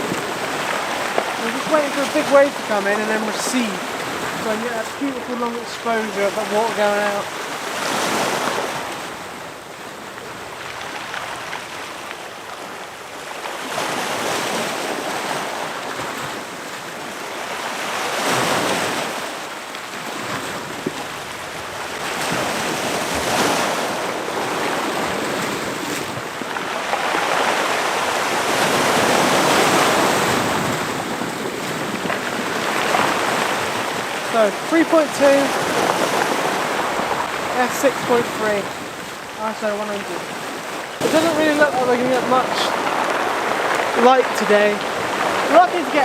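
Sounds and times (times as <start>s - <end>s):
sea surf breaking on shore: 0.0s - 46.0s.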